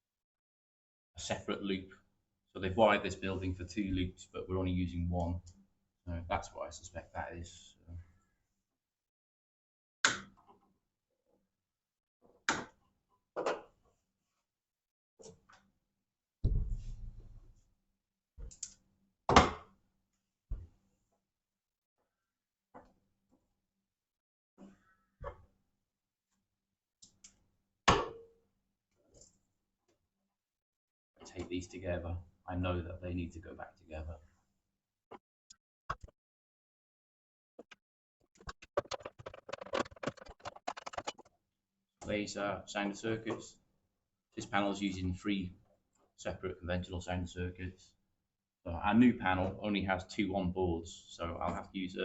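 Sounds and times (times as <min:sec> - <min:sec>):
heavy low thunk: 0:16.4 - 0:17.2
cable wiring clicking and scratching: 0:37.6 - 0:41.4.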